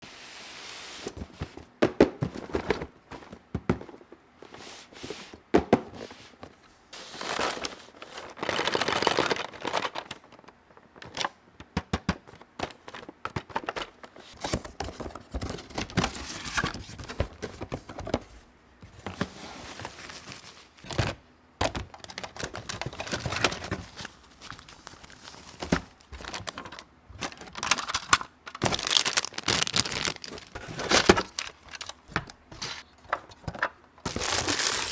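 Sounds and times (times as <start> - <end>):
plastic packaging crinkling and tearing: 7.0 - 11.3, 21.9 - 32.8, 34.0 - 34.9.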